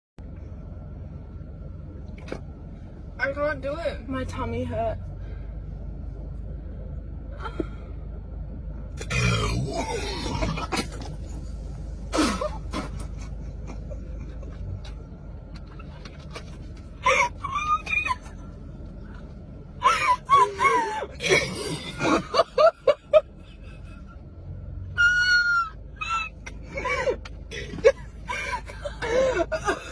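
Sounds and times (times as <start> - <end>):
girls burping: 9.1 - 10.9
girls laughing: 19.8 - 24.2, 26.0 - 29.9.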